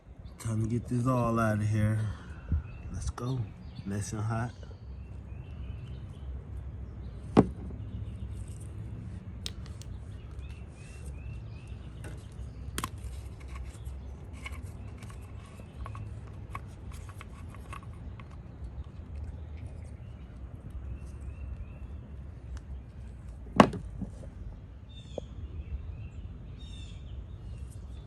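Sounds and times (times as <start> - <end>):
small birds chirping: 0.0 - 28.0
hand tools clicking and tapping: 9.4 - 10.0.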